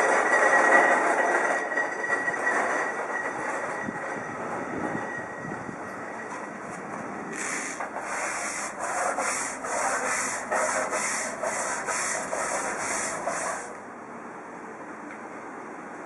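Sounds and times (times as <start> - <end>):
deck brush scrubbing floor: 6.7 - 13.8.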